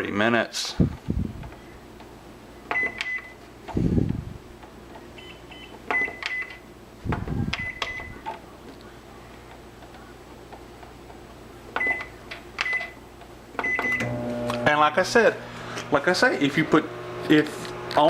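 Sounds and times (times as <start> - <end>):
microwave keypad beeps: 2.7 - 3.4, 5.2 - 6.6, 7.6 - 8.2, 11.8 - 13.0, 13.6 - 14.1.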